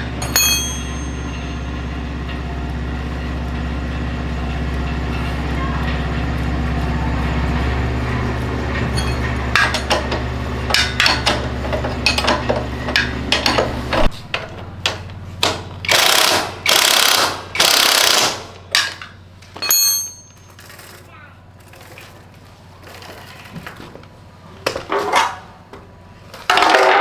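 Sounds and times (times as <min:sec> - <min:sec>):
machine running: 0:00.0 - 0:18.5.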